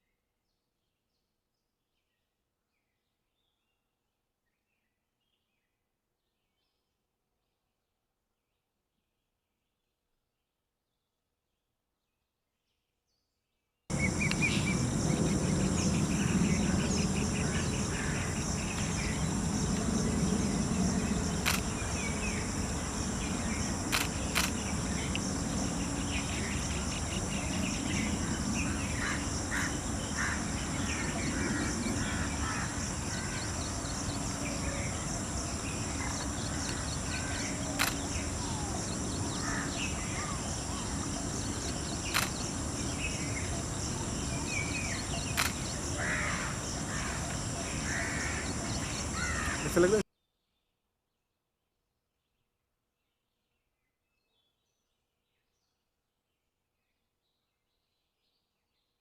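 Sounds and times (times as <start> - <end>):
low rumble: 13.9 - 31.0
bird calls: 13.9 - 50.0
insect drone: 13.9 - 50.0
sharp clicks: 21.4 - 21.8, 23.9 - 25.3, 37.7 - 38.1, 42.1 - 42.4, 45.3 - 45.7.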